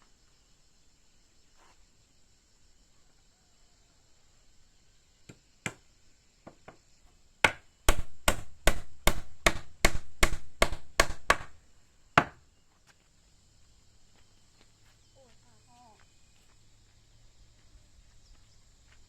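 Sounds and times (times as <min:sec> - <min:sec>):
chopping wood: 0:07.4 - 0:11.6, 0:12.2 - 0:12.4.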